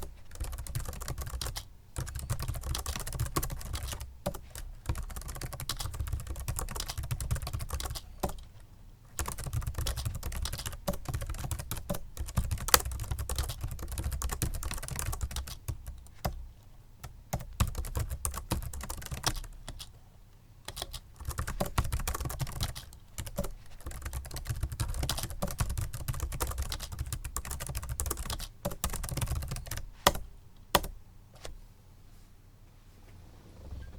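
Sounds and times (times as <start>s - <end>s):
keyboard typing: 0.0s - 8.5s, 9.2s - 16.4s, 17.0s - 19.9s, 20.7s - 30.2s.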